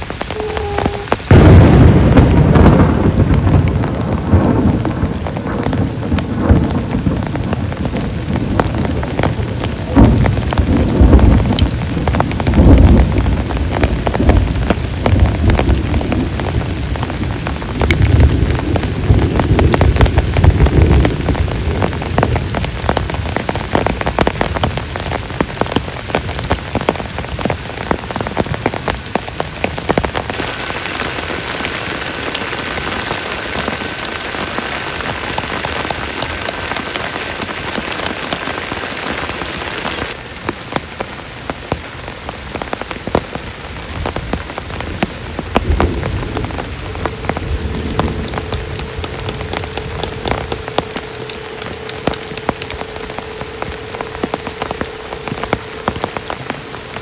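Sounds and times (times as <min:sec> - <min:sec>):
heavy rain pattering: 0:00.0 - 0:57.0
low rumble of thunder: 0:00.2 - 0:29.0, 0:43.3 - 0:57.0
faint steady high tone: 0:00.3 - 0:01.3, 0:47.0 - 0:57.0.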